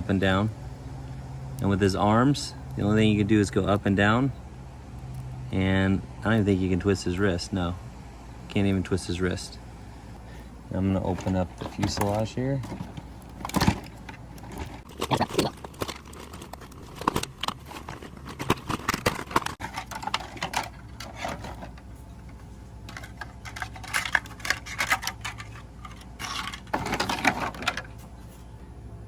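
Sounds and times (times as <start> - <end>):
plastic clicking and rustling: 11.0 - 28.0.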